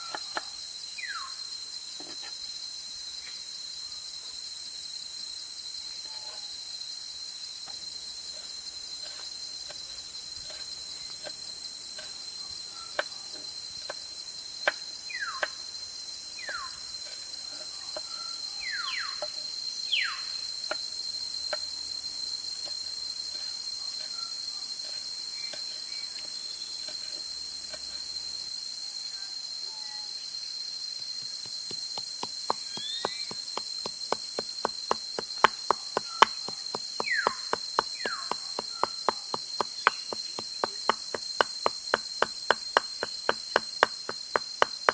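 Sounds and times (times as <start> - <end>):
insect drone: 0.0 - 44.9
falling whistled bird calls: 32.7 - 33.4.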